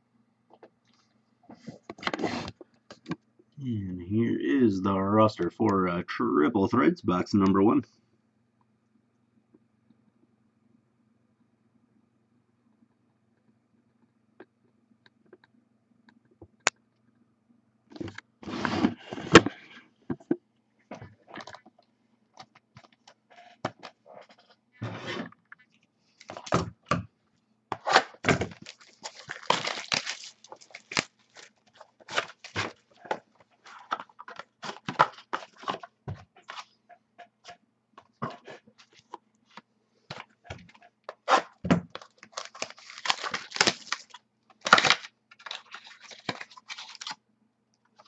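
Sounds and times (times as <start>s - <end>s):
plastic wrapping crinkling and tearing: 27.9s - 35.8s, 41.4s - 47.2s.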